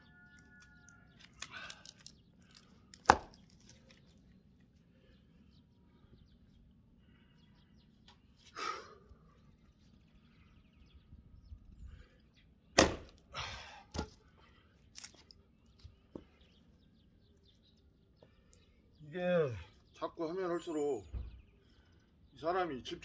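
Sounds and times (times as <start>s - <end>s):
axe striking a log: 3.0s - 3.4s, 12.8s - 13.2s, 13.9s - 14.2s.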